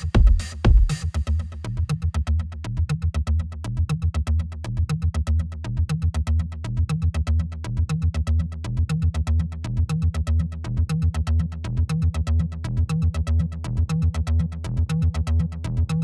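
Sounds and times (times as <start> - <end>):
heavy kick drum beats: 0.0 - 2.1
pulsing bass line: 0.0 - 16.0.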